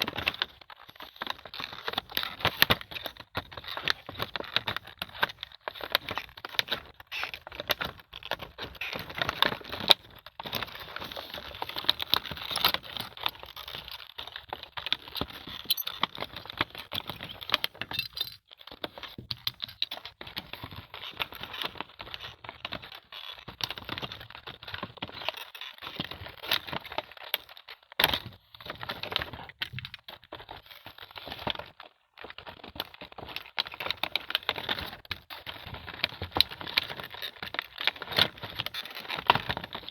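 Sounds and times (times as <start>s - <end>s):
plastic toys clicking and rattling: 14.9s - 20.1s.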